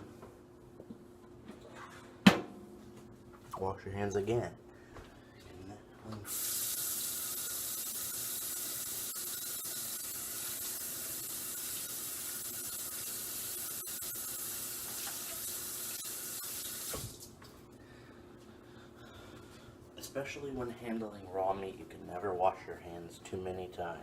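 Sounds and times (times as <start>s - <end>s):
faucet running into sink: 6.3s - 17.2s.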